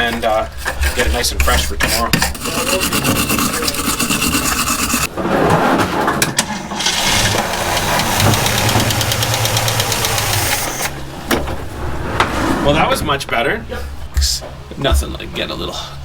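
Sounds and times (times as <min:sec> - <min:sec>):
scraping battery terminals: 0:06.4 - 0:11.0
starter motor cranking engine: 0:06.5 - 0:11.0.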